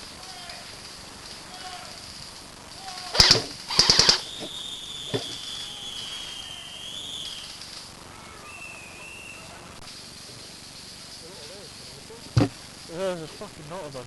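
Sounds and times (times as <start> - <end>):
airsoft guns firing bursts: 2.8 - 7.9.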